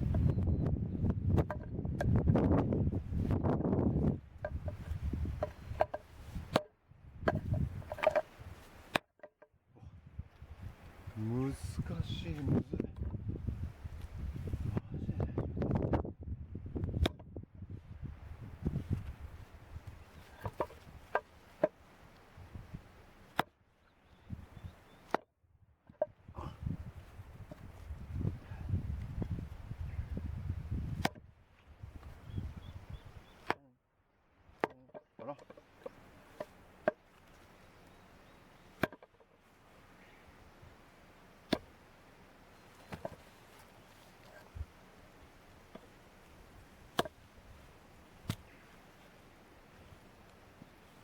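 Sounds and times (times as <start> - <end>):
wood being chopped: 1.3 - 2.2, 4.4 - 8.3, 8.9 - 9.4, 16.8 - 17.4, 20.3 - 21.8, 23.2 - 23.6, 25.0 - 25.3, 30.8 - 31.3, 33.4 - 33.7, 34.5 - 37.2, 38.7 - 39.2, 41.4 - 41.8, 42.8 - 43.3, 45.6 - 46.0, 46.8 - 47.3, 48.2 - 48.5.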